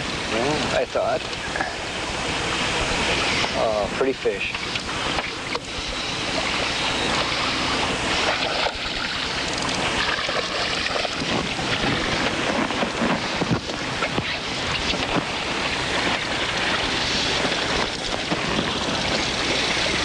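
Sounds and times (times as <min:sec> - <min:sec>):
sea water washing around boat: 0:00.0 - 0:20.0
wind on microphone: 0:04.7 - 0:20.0.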